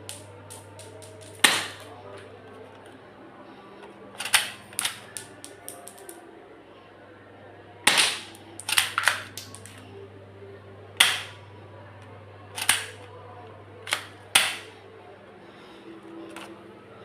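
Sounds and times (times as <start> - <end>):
pistol shots: 1.0 - 1.9, 7.9 - 9.7.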